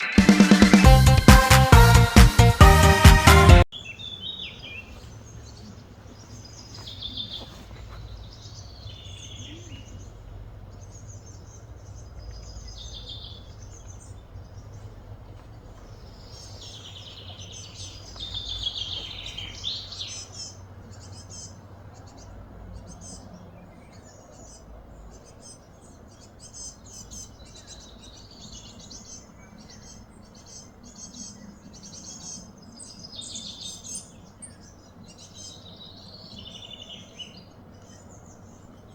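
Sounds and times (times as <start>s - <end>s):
birds chirping and calling: 3.7s - 38.9s
steady low hum: 3.8s - 33.0s.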